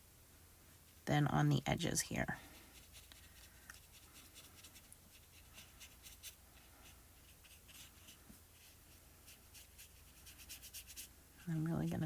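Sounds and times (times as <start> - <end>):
marker scratching on card paper: 2.7 - 11.1.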